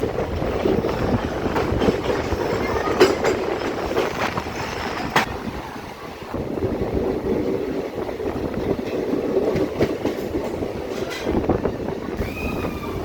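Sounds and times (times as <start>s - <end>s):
clacks over rail joints: 0.0s - 5.4s, 8.0s - 11.6s
train wheels rumbling on track: 0.0s - 13.0s.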